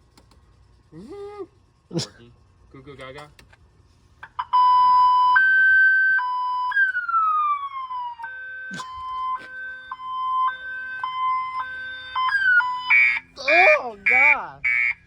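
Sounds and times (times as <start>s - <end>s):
two-tone electronic siren: 4.3s - 15.0s
falling siren wail: 4.4s - 15.0s.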